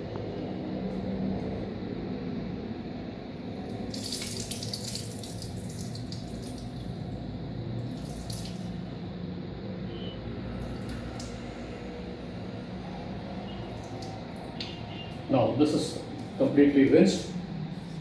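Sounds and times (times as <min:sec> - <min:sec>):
water splashing in a vessel: 0:03.6 - 0:07.2, 0:07.8 - 0:08.8, 0:13.5 - 0:15.1.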